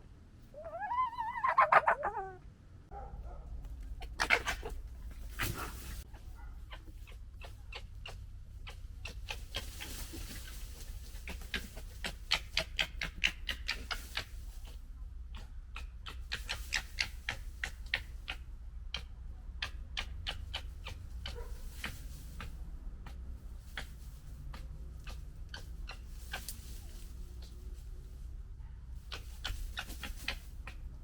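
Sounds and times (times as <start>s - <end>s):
foxes gekkering: 0.4s - 3.1s.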